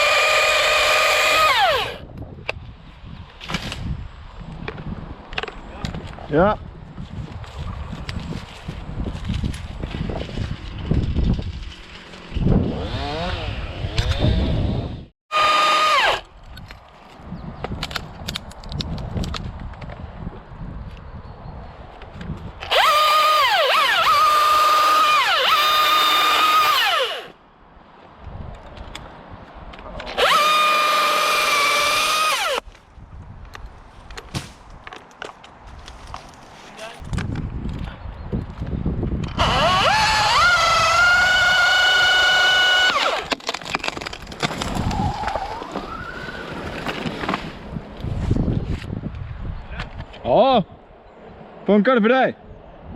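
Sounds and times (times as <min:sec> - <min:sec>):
chainsaw revving: 0:00.0 - 0:02.0, 0:12.7 - 0:14.6, 0:22.7 - 0:27.3, 0:30.2 - 0:32.6, 0:39.4 - 0:43.2.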